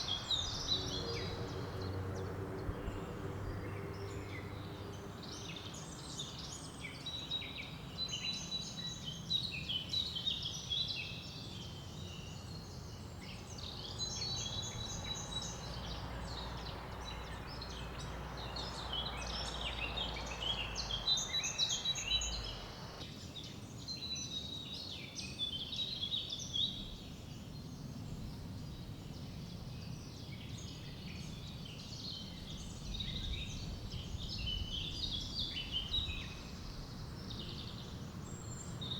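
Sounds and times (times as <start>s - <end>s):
songbirds chirping and singing: 0.0s - 38.9s
river water over rapids: 17.9s - 23.0s.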